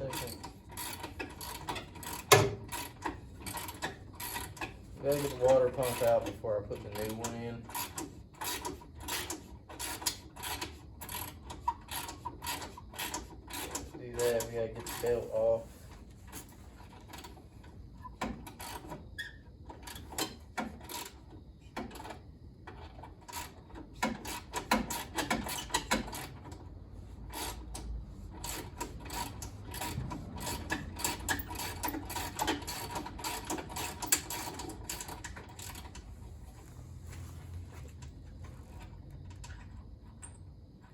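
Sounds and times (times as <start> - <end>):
hand tools clicking on metal: 27.4 - 36.1.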